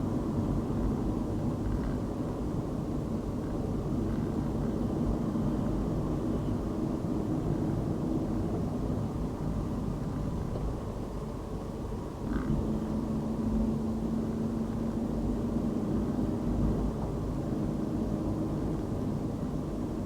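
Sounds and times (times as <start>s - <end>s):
car engine and tyre rumble: 0.0s - 20.0s.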